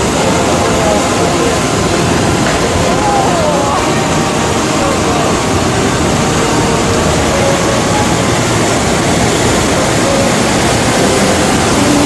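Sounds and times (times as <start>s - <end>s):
floodwater rushing: 0.0s - 12.0s.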